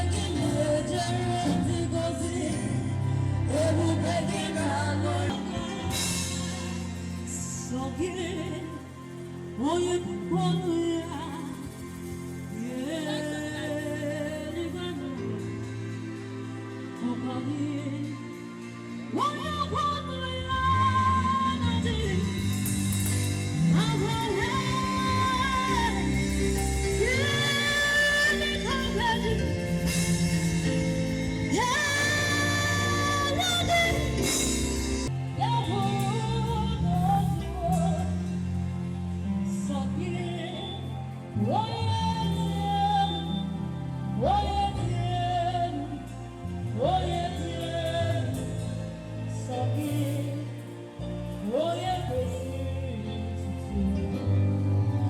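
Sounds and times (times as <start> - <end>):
person singing: 0.0 - 9.0, 23.6 - 38.4
gospel band music: 0.0 - 55.0
steady bass line: 0.0 - 55.0.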